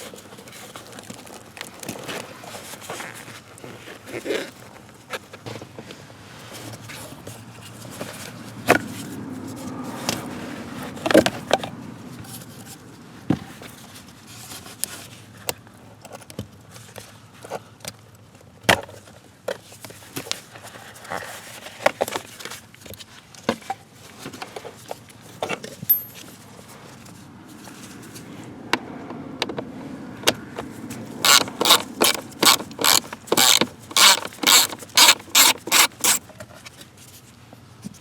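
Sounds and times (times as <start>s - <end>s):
hand tools clicking and knocking: 25.9s - 26.3s, 31.2s - 36.2s.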